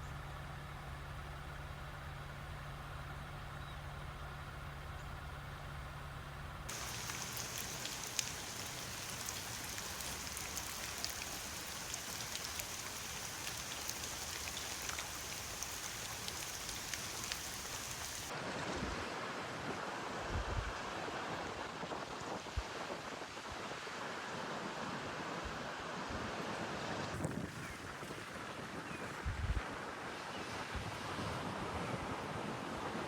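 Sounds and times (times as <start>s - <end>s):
heavy rain falling: 6.7s - 18.3s.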